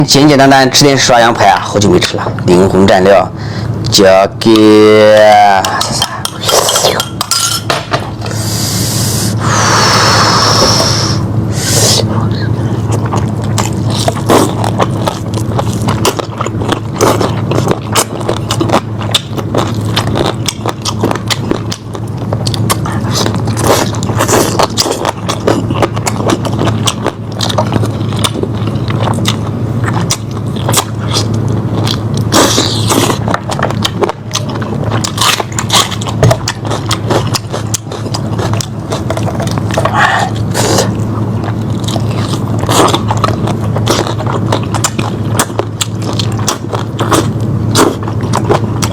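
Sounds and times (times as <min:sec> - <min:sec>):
low hum: 0:01.3 - 0:48.9
person chewing meat: 0:03.2 - 0:07.2, 0:08.0 - 0:48.9.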